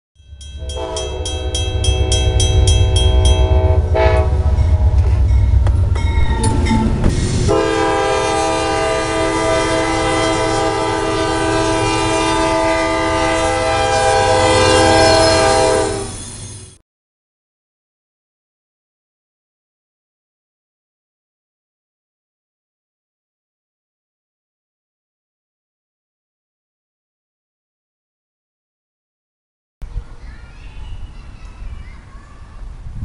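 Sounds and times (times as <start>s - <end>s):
passing train rumble: 0.2s - 16.8s, 29.8s - 33.0s
train air horn blasts: 0.6s - 5.6s, 6.5s - 16.2s.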